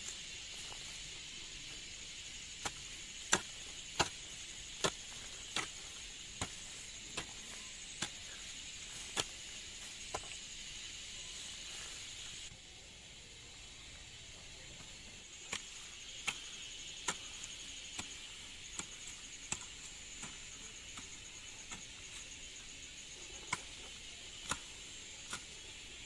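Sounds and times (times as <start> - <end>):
high-pitched insect drone: 0.0 - 26.0
hand tool chopping strikes: 2.6 - 7.4, 24.4 - 24.7.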